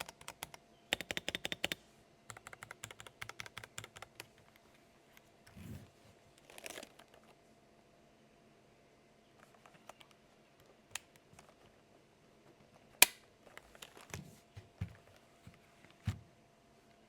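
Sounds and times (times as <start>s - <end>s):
mechanical keyboard key clacks: 0.0s - 4.5s.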